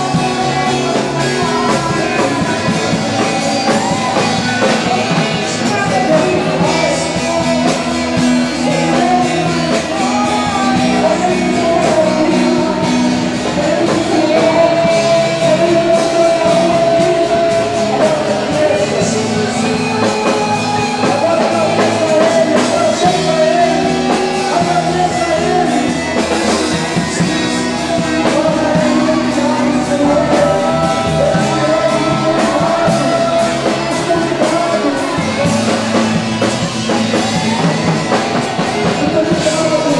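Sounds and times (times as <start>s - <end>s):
rock band with singing: 0.0s - 39.9s.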